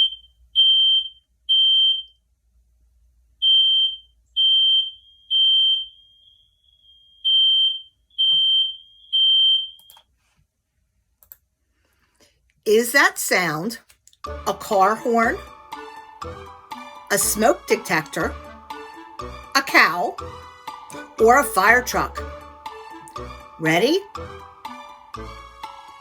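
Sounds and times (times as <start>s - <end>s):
smoke detector alarm beeps: 0.0s - 2.2s, 3.4s - 10.0s.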